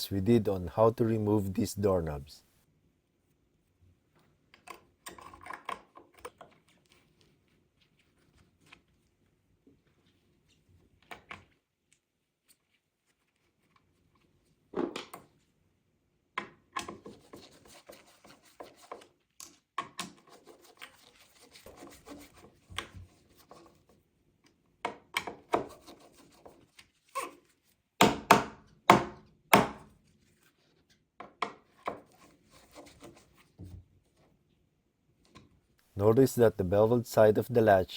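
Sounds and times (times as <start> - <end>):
sharp knocks on wooden door: 28.0 - 29.8.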